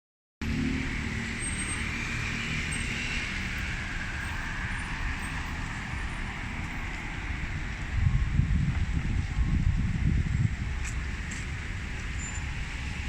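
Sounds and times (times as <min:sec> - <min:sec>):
distant road traffic: 0:00.4 - 0:13.0.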